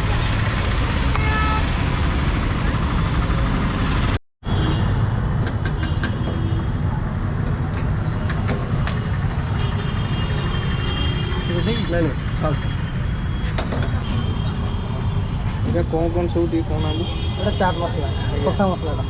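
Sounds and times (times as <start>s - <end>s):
road traffic rumble: 0.0s - 19.0s
vehicle horn toot: 1.1s - 1.8s.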